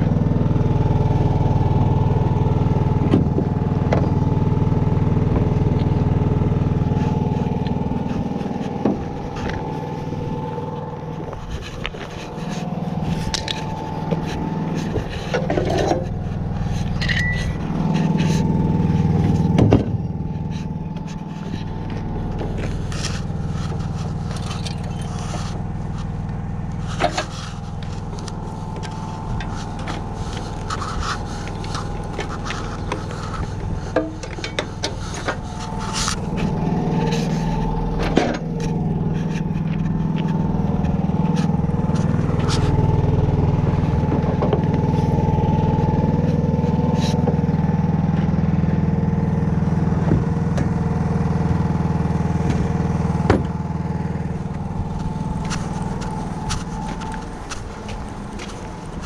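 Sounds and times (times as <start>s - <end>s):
motor humming: 0.0s - 59.0s
scrapes clicks and knocks: 6.8s - 47.4s, 54.4s - 59.0s.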